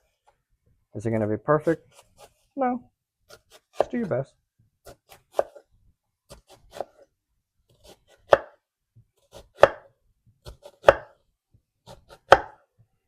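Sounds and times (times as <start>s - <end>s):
knife cutting onion on board: 1.6s - 2.5s, 3.2s - 4.2s, 4.8s - 12.8s.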